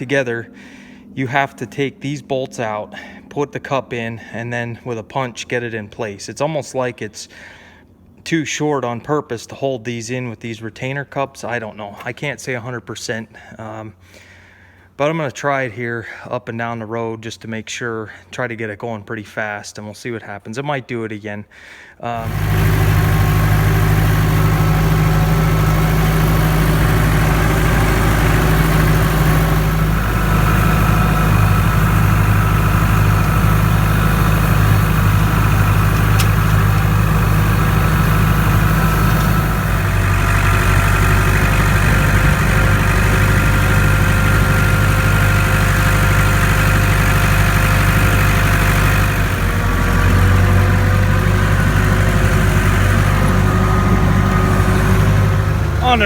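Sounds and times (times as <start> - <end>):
tractor engine running: 22.1 - 56.0.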